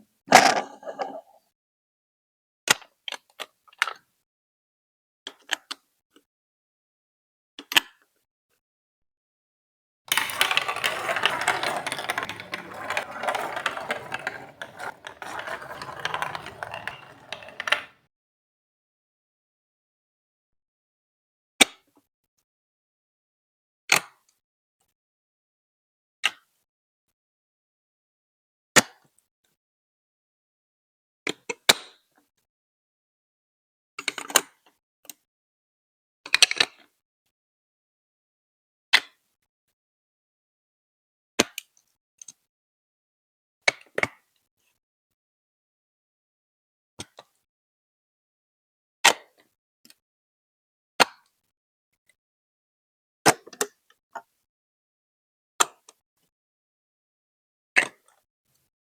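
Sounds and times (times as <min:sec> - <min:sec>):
plastic bricks clicking together: 0:10.1 - 0:17.9
marbles rattling down plastic track: 0:10.1 - 0:18.0.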